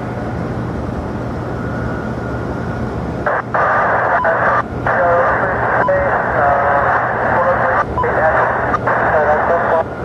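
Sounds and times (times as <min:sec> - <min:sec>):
low rumble of aircraft: 0:00.0 - 0:10.0
radio static hiss: 0:03.2 - 0:10.0.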